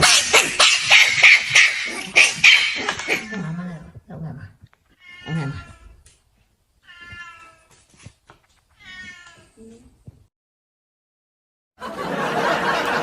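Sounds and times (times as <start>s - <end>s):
cat meowing: 4.9s - 6.1s, 6.8s - 7.9s, 8.7s - 9.6s.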